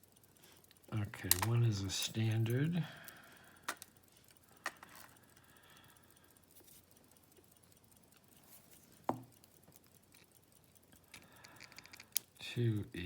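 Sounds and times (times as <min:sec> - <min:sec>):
metal lock parts handling: 0:01.2 - 0:02.6, 0:03.7 - 0:03.9.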